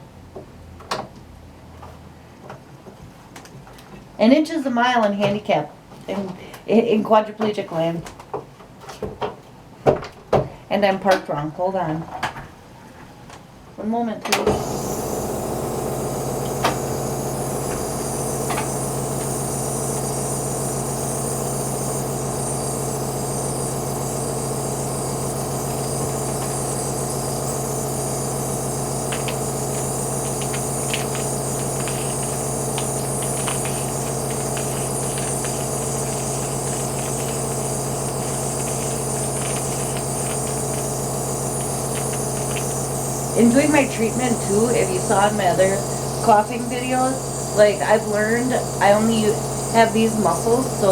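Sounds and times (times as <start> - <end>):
nebulizer compressor humming: 14.3 - 50.9.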